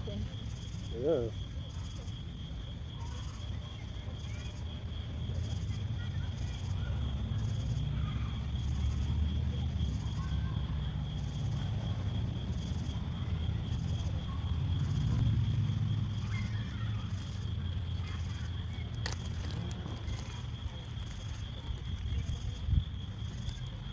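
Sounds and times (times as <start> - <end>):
insects trilling: 0.0 - 23.9
low rumble: 10.8 - 21.1.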